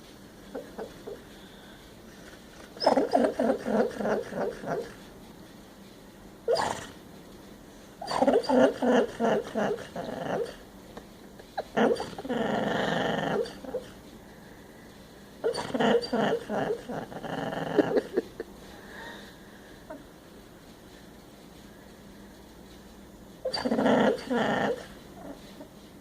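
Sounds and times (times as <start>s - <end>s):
sleeping dog snorting: 0.5s - 5.1s, 6.5s - 7.1s, 8.0s - 10.7s, 11.6s - 14.0s, 15.4s - 18.2s, 23.4s - 25.8s.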